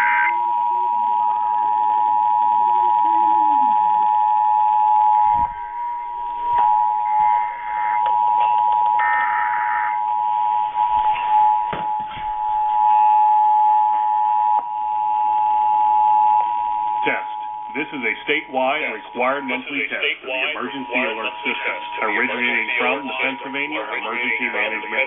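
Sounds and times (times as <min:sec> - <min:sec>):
two-tone attention signal: 0:02.6 - 0:13.1.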